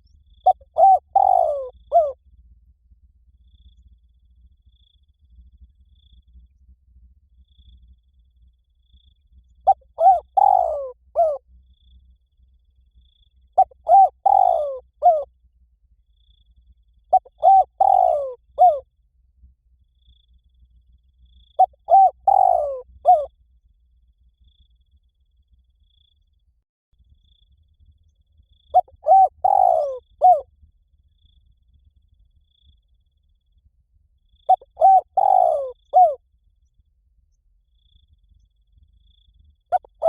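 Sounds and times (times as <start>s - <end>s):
dove cooing: 0.4s - 2.2s, 9.6s - 11.4s, 13.6s - 15.3s, 17.1s - 18.8s, 21.6s - 23.3s, 28.8s - 30.4s, 34.5s - 36.2s, 39.7s - 40.0s.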